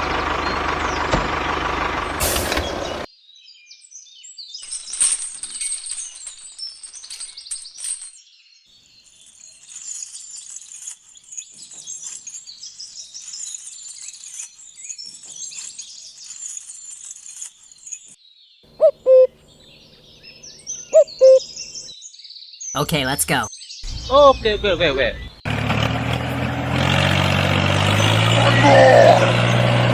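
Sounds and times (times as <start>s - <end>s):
birds chirping: 17.7s - 25.5s
short hooting calls: 18.8s - 19.4s, 20.9s - 21.5s.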